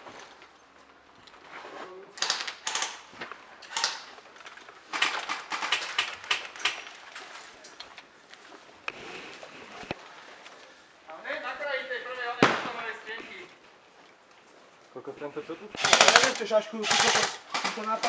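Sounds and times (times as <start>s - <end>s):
airsoft guns firing bursts: 2.2s - 3.1s, 4.9s - 6.9s, 15.8s - 18.0s.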